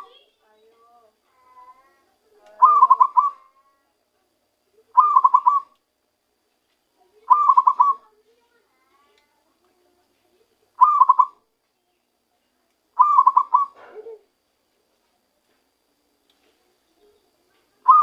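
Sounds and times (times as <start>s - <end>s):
dove cooing: 2.5s - 3.5s, 4.9s - 5.7s, 7.2s - 8.1s, 10.8s - 11.4s, 13.0s - 14.3s.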